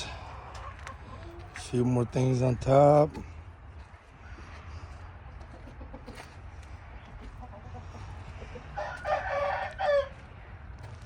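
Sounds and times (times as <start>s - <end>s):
rooster crowing: 8.8s - 10.2s.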